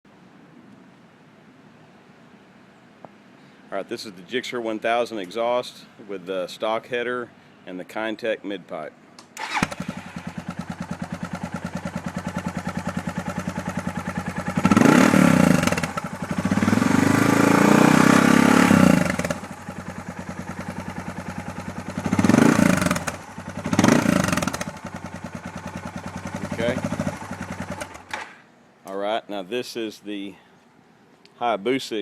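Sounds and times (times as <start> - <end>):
motorcycle engine idling and revving: 9.4 - 28.3.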